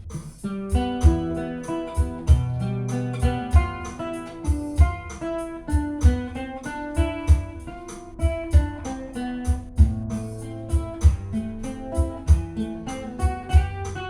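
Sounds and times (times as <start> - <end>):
low thumping beat: 0.0 - 14.0
plucked guitar melody: 0.0 - 14.0
bass notes: 0.9 - 3.9, 7.0 - 14.0.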